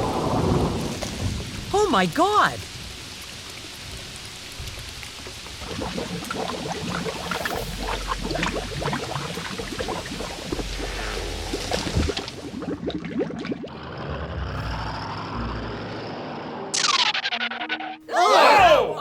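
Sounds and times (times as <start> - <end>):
rain drops splashing: 0.0 - 13.7.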